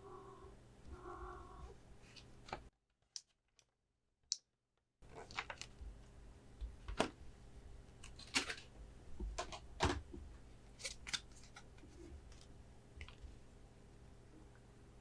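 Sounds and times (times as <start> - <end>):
cards and packaging clicking: 5.1 - 5.8, 8.0 - 8.7, 10.8 - 11.8.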